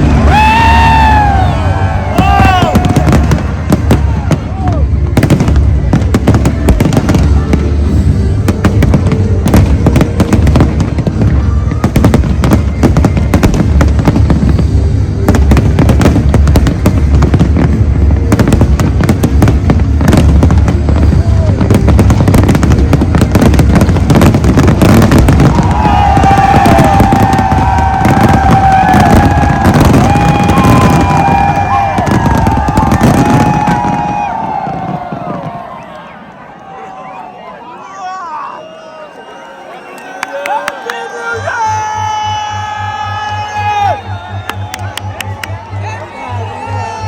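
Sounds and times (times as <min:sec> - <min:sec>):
music playing: 0:00.0 - 0:35.0, 0:38.9 - 0:47.0
fireworks crackling and banging: 0:00.0 - 0:35.9.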